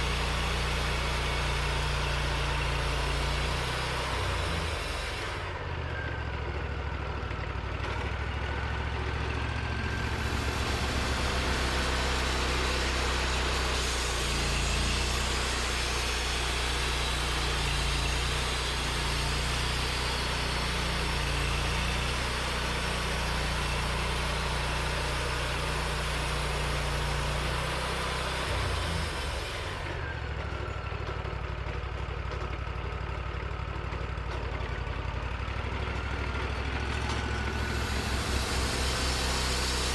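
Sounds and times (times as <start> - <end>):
saw blade cutting log: 0.0 - 5.6, 9.7 - 30.1, 36.7 - 39.9
sawmill engine running: 0.0 - 39.9.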